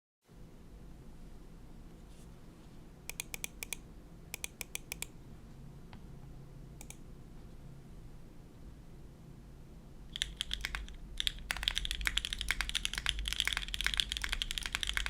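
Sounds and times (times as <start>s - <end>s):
faint low hum: 0.3s - 15.0s
mechanical keyboard typing: 3.1s - 3.8s, 4.4s - 5.1s, 10.1s - 15.0s.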